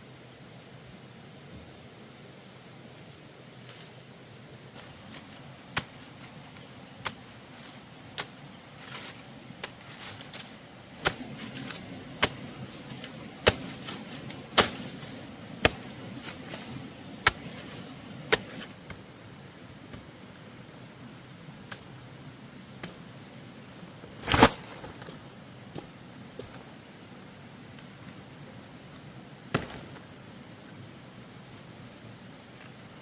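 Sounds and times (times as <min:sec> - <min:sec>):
faint rustling: 0:02.9 - 0:19.1.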